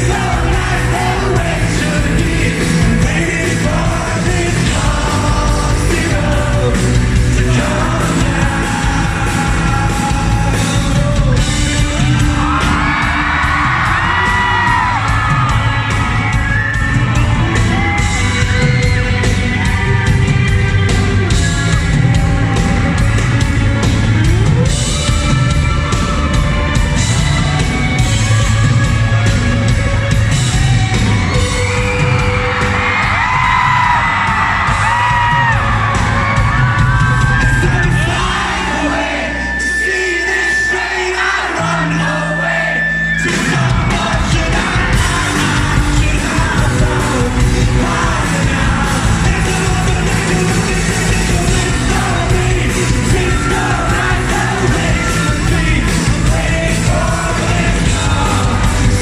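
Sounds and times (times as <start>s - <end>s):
man singing: 0.0s - 15.6s, 37.2s - 59.0s
audience whooping and yelling: 0.0s - 59.0s
live rock band playing: 0.0s - 59.0s.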